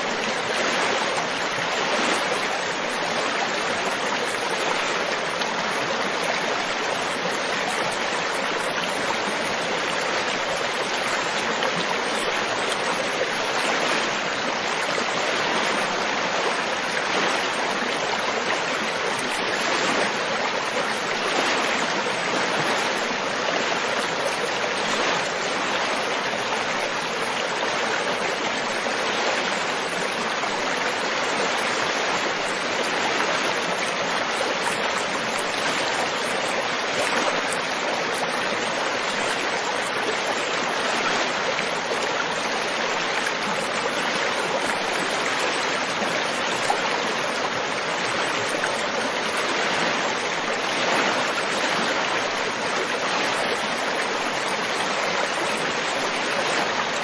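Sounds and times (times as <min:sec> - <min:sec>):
stream water flowing: 0:00.0 - 0:57.0.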